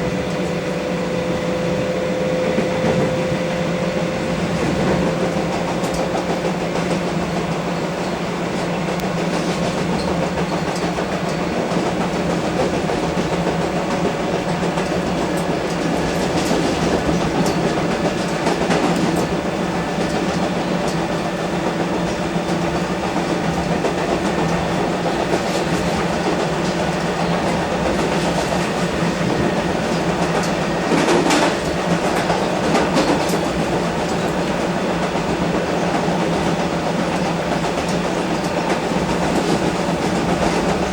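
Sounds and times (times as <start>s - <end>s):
electric train hum and rumble: 0.0s - 40.9s
train clatter: 0.0s - 40.9s
train wheels clicking over rails: 0.0s - 40.9s.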